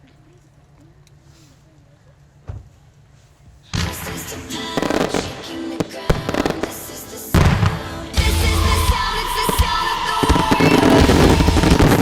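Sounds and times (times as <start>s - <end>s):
fireworks bangs and crackles: 3.7s - 12.0s
music: 3.8s - 12.0s.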